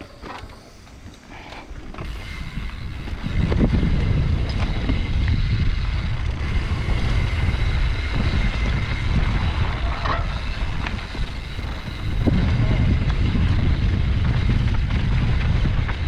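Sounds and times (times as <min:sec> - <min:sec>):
mountain bike rattling on dirt: 0:00.0 - 0:16.0
wind over microphone: 0:00.0 - 0:16.0.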